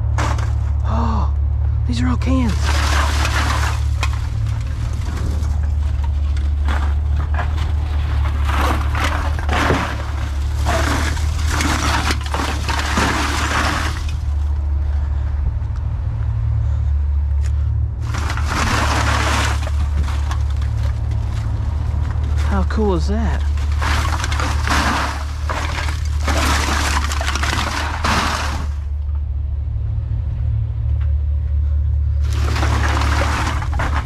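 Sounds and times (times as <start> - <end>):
steady low hum: 0.0 - 34.0
aluminum cans rattling and crunching: 2.4 - 14.4, 18.0 - 22.7, 23.3 - 28.8, 32.2 - 34.0.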